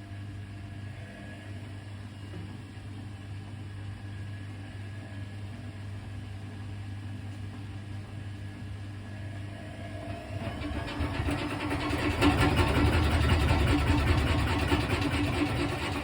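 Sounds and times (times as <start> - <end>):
washing machine running: 8.8 - 16.0.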